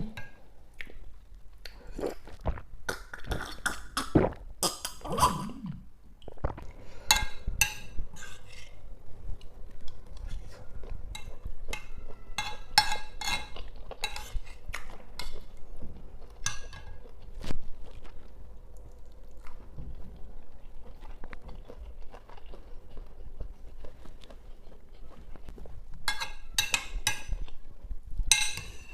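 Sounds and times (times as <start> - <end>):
cutlery clinking on a plate: 11.1 - 15.4, 16.4 - 17.0, 26.1 - 27.4, 28.3 - 28.9.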